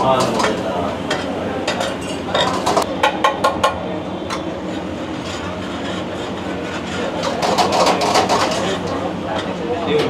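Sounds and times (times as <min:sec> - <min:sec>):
kitchen hum: 0:00.0 - 0:10.0
metal spatula scraping griddle: 0:04.7 - 0:08.8.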